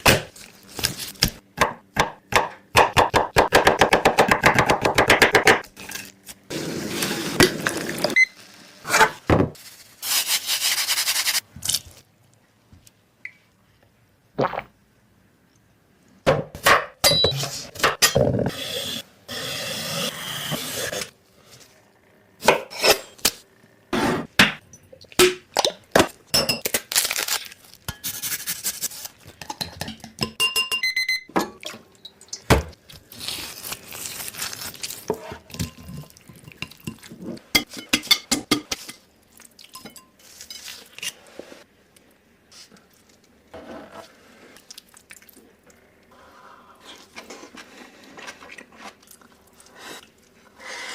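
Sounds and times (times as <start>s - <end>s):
dishes and utensils clinking: 29.4s - 31.7s, 39.7s - 40.8s.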